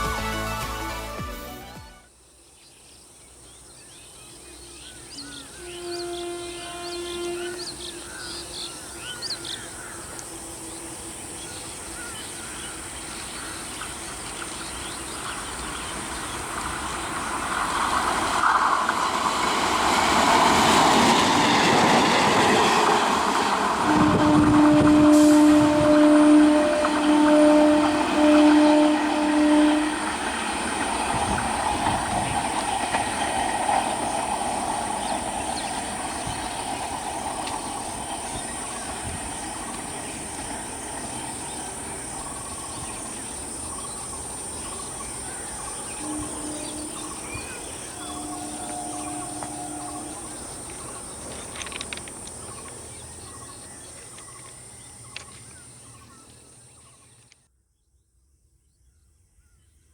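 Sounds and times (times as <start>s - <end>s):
train wheels clattering on rails: 26.6s - 56.4s.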